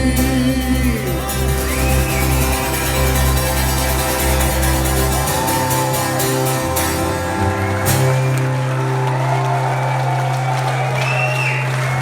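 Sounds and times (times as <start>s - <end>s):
live rock band playing: 1.3s - 9.0s.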